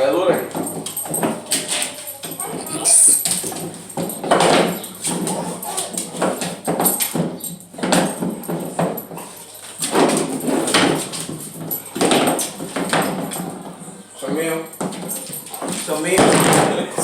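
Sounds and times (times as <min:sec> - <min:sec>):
dog vocalizing: 0:01.3 - 0:03.5, 0:05.1 - 0:06.3.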